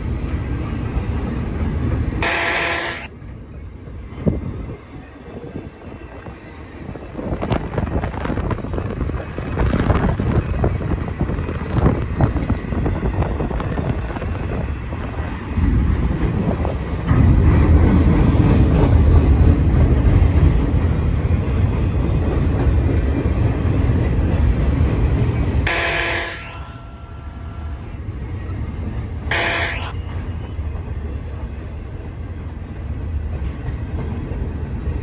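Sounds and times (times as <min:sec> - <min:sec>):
freight train rumbling past: 0:00.0 - 0:35.0
wind buffeting microphone: 0:03.2 - 0:25.7.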